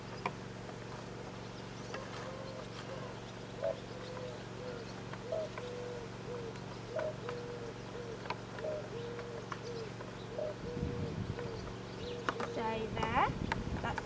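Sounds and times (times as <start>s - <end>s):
dove cooing: 1.1s - 13.3s.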